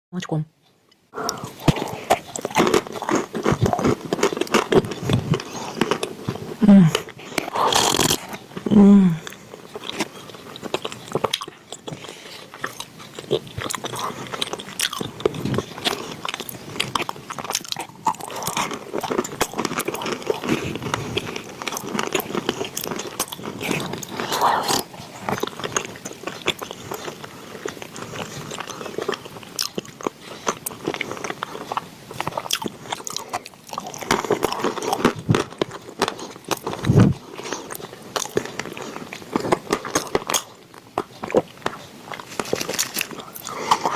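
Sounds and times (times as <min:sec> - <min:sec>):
chewing crunchy chalk: 0:01.3 - 0:43.9.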